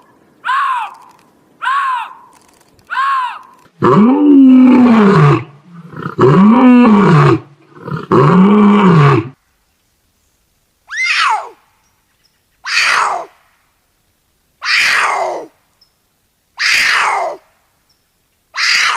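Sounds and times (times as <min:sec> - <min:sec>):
short higher-pitched animal calls: 0:10.9 - 0:11.6, 0:12.6 - 0:13.3.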